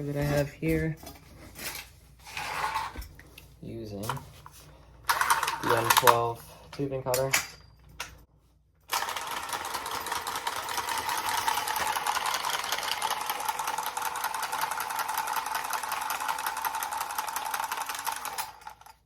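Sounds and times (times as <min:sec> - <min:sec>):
tubing cutter motor whirring: 0:08.9 - 0:18.9.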